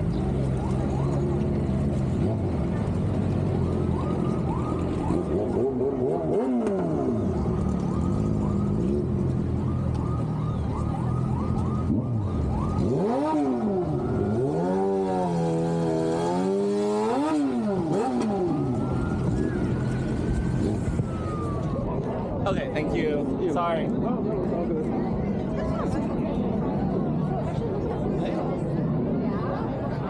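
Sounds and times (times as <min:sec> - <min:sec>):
street traffic: 0:00.0 - 0:30.0
engine revving: 0:04.9 - 0:09.2, 0:11.8 - 0:21.5.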